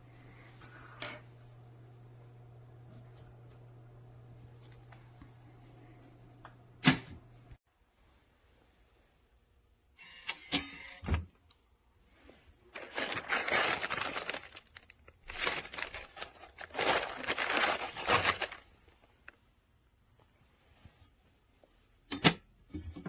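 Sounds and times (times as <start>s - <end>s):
rustling and scraping: 12.1s - 19.4s.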